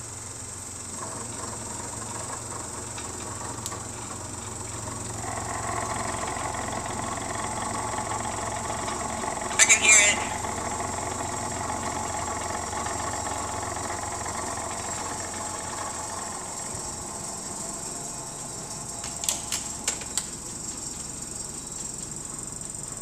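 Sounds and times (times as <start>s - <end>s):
heavy construction machinery rumble: 0.0s - 23.0s.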